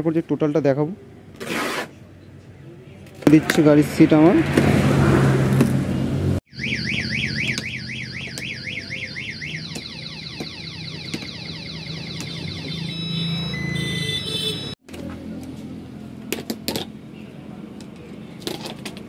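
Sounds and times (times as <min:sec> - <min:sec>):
car alarm siren: 0:06.5 - 0:14.8.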